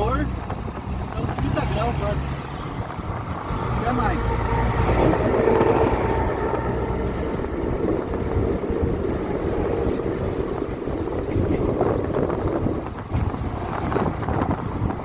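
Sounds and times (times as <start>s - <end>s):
engine and road rumble: 0.0s - 15.0s
wind buffeting microphone: 0.0s - 15.0s.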